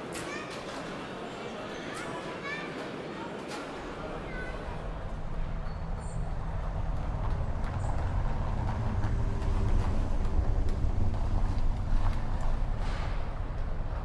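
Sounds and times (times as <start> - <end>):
low vehicle rumble: 5.2 - 14.0.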